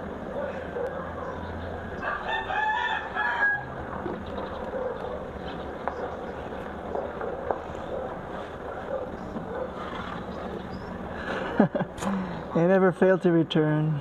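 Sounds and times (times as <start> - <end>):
rooster crowing: 2.0 - 3.8.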